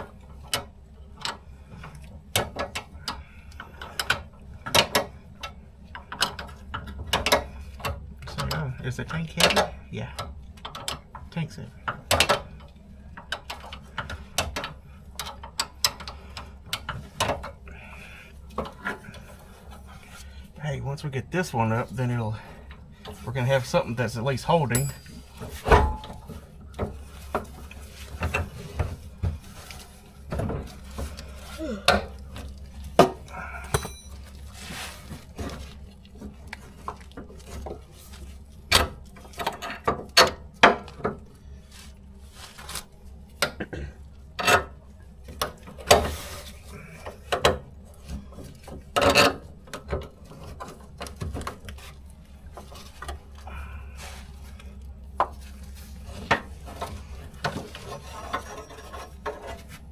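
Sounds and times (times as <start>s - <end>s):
metal tools clanking and scraping: 24.4s - 26.5s, 33.0s - 35.2s, 56.2s - 59.7s.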